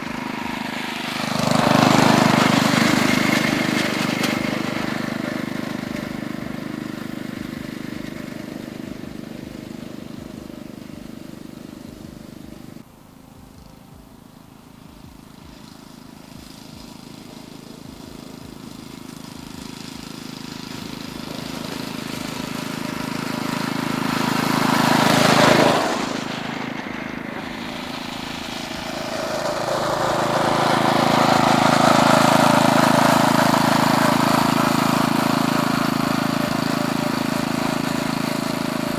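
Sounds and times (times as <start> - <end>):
miniature train engine running: 0.0 - 38.9.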